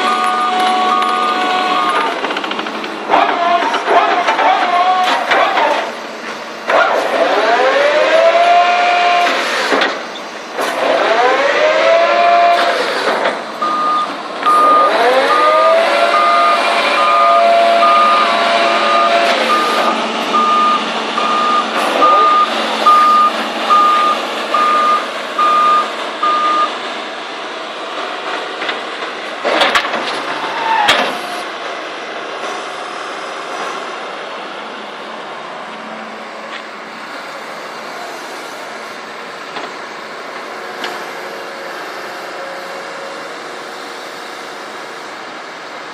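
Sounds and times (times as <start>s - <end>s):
warning beep: 0.0s - 2.1s, 13.6s - 26.7s
excavator engine and hydraulics: 0.0s - 45.9s.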